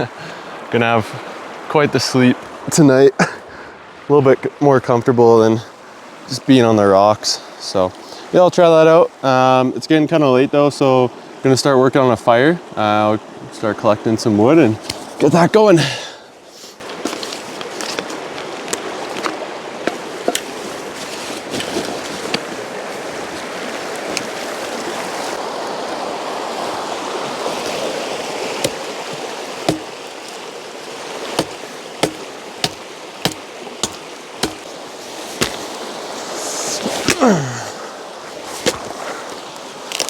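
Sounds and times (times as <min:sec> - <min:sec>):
river rushing over its bed: 0:22.3 - 0:40.0
sharp snaps and knocks: 0:31.4 - 0:34.7, 0:35.4 - 0:35.7.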